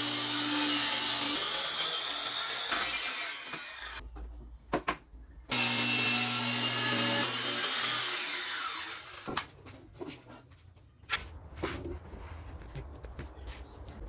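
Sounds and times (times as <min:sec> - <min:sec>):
power saw cutting wood: 0:00.0 - 0:04.0, 0:05.5 - 0:09.5.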